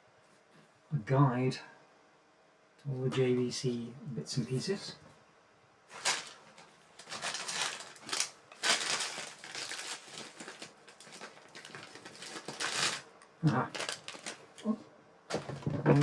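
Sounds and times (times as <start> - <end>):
cardboard packaging rustling: 5.9 - 14.7, 15.3 - 16.0.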